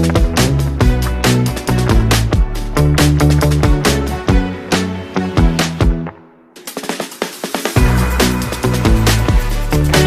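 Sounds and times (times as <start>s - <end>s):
bass and kick drum: 0.0s - 6.1s, 7.8s - 10.0s
electronic music: 0.0s - 10.0s.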